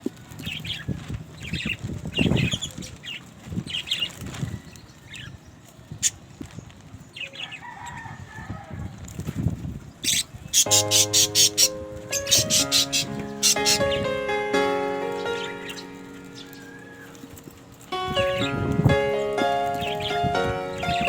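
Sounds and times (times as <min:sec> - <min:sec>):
budgerigars chirping: 0:10.0 - 0:14.2, 0:15.1 - 0:16.8, 0:19.7 - 0:21.0
bird warbling trill: 0:10.6 - 0:21.0.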